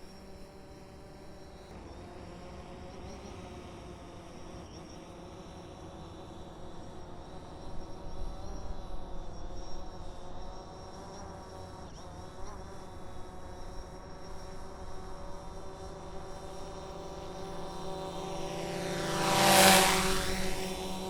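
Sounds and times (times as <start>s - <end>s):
drone propellers whirring: 14.7s - 21.0s.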